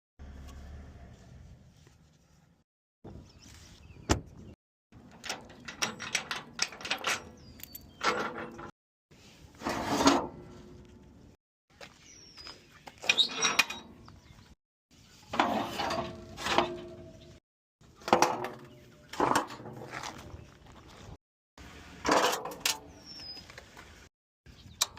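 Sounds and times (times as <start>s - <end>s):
metal clanking and clicking: 5.0s - 8.7s.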